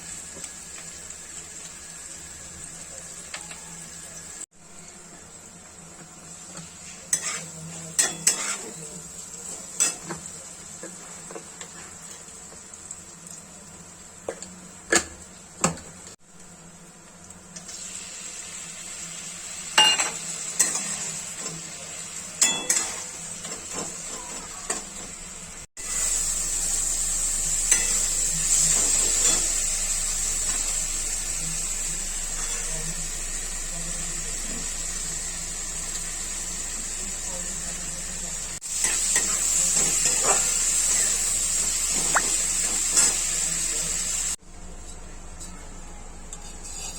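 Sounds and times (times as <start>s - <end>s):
food sizzling in a pan: 0.0s - 45.6s, 46.2s - 46.9s
utensil scraping a pan: 6.8s - 8.8s, 46.3s - 46.9s.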